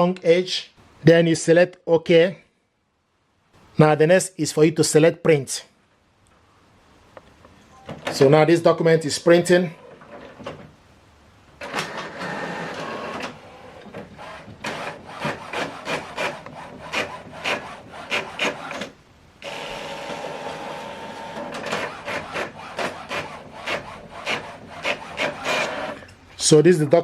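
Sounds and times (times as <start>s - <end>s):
inkjet printer printing: 11.6s - 26.0s.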